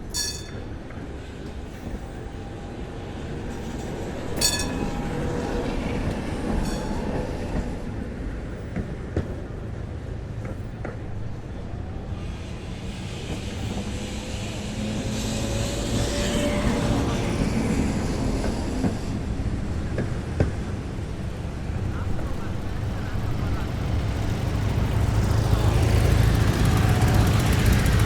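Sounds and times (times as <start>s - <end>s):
tram bell ringing: 0.0s - 2.2s, 2.8s - 8.8s
tram wheels rumbling on rails: 0.0s - 28.0s.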